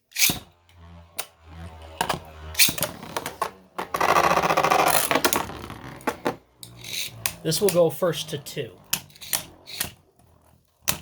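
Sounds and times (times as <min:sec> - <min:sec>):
spinning tops clattering: 0:08.8 - 0:11.0.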